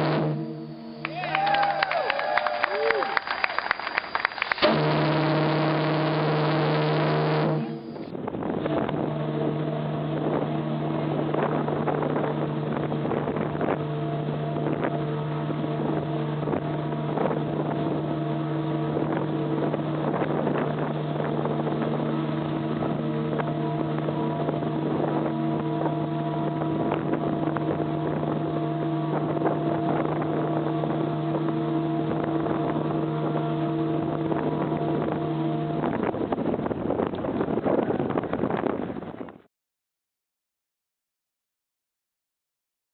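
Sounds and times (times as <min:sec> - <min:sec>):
deep ship's whistle: 0:00.0 - 0:08.1, 0:12.4 - 0:36.1.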